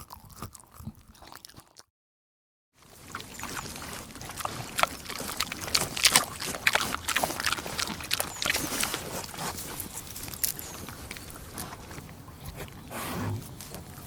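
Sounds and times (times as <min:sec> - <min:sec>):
animal crunching and chewing: 0:00.0 - 0:01.8, 0:02.8 - 0:14.0.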